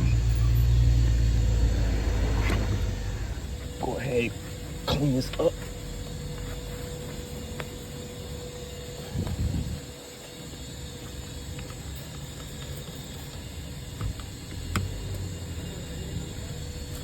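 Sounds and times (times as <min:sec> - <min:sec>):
low rumble: 0:00.0 - 0:04.6
steady hum: 0:00.0 - 0:17.0.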